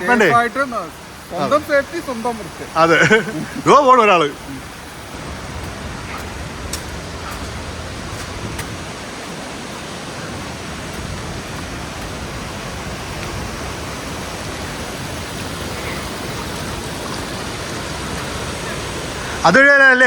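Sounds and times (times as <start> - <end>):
water rushing over rocks: 0.0 - 20.0.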